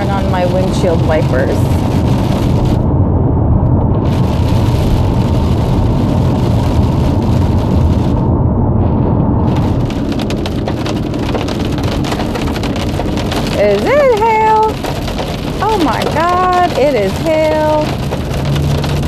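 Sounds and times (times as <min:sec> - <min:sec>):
heavy rain drumming on a car: 0:00.0 - 0:03.0, 0:03.8 - 0:19.0
low road rumble: 0:00.0 - 0:19.0
hail ticking: 0:09.4 - 0:19.0.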